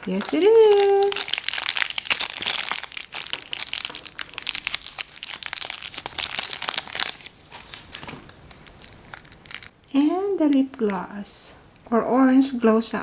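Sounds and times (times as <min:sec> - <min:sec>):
packaging crinkling: 0:00.0 - 0:09.8.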